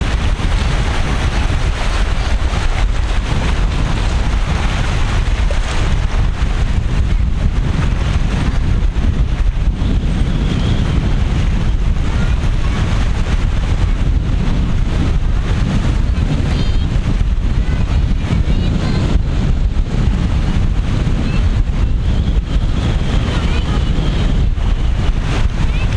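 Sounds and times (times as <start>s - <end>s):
rough sea surf: 0.0s - 25.9s
wind buffeting microphone: 0.0s - 25.9s.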